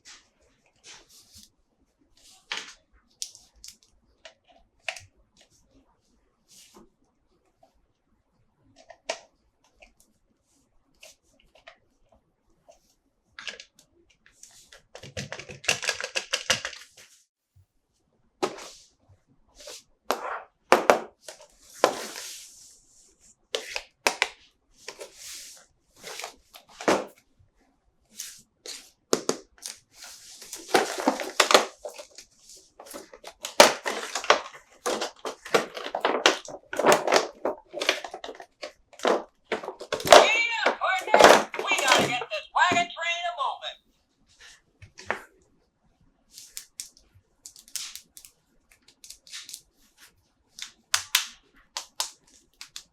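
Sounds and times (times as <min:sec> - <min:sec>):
plastic toy parts clicking: 0:15.0 - 0:16.9
plastic and cardboard crinkling: 0:19.6 - 0:22.8, 0:23.6 - 0:27.2, 0:28.2 - 0:43.2.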